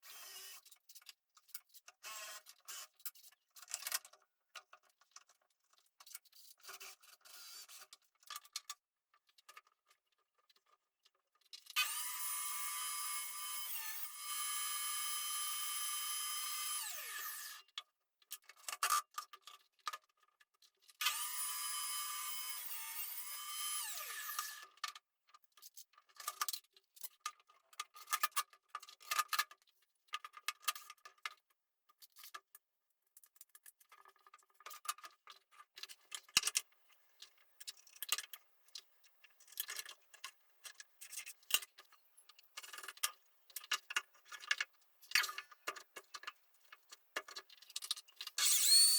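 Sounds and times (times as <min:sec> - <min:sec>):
power tool motor whining: 0:11.8 - 0:17.6, 0:21.1 - 0:24.6, 0:48.4 - 0:48.9.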